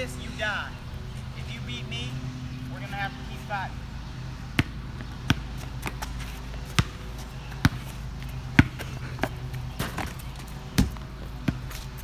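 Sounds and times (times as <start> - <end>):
steady low hum: 0.0 - 12.0
basketball bouncing: 4.0 - 12.0.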